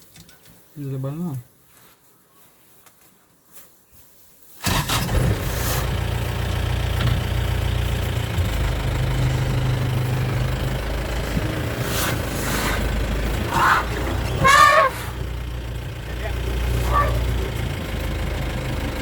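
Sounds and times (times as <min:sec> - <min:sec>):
vehicle engine idling: 0:04.6 - 0:19.0.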